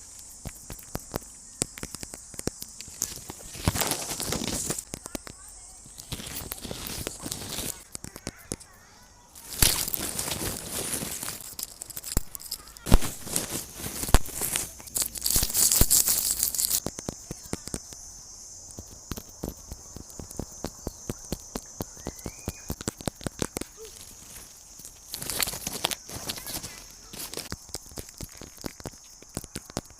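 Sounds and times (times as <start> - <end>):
light tapping: 0.0 - 8.8
rustling and crinkling: 0.0 - 29.9
steady high hiss: 0.0 - 29.9.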